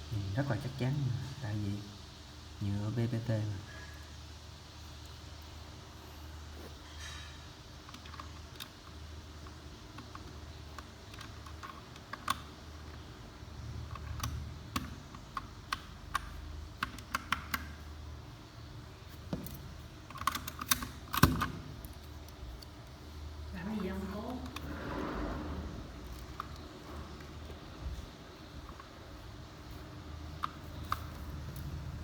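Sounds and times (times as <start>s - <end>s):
mechanical keyboard keystrokes: 20.1s - 22.7s.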